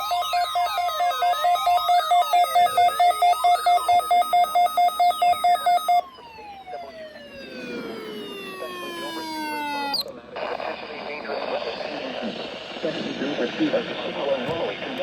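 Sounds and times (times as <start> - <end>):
rapidly pulsing alarm beep: 0.0 - 10.1
wavering siren-like sweep: 0.0 - 10.1
long tone sliding down in pitch: 5.0 - 10.1.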